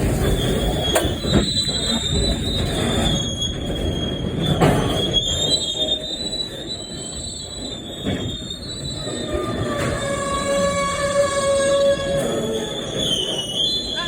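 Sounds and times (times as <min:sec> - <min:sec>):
train wagon clank: 0:00.0 - 0:06.0, 0:07.8 - 0:13.6
low train rumble: 0:00.0 - 0:14.0
train wheels squealing: 0:00.0 - 0:14.0.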